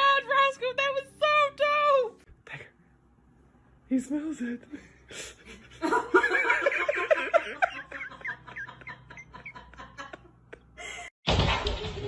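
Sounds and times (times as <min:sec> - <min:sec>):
person laughing: 0:05.2 - 0:11.1.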